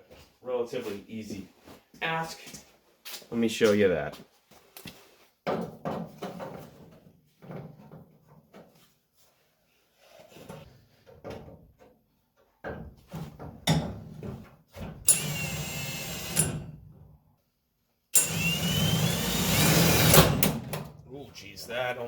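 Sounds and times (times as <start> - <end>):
power drill drilling sheet metal: 15.1 - 16.6, 18.2 - 20.8.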